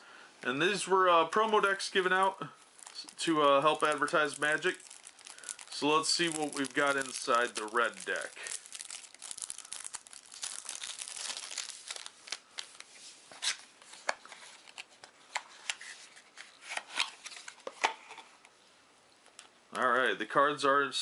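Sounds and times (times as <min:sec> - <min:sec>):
paper packaging crinkling and tearing: 0:01.9 - 0:15.1.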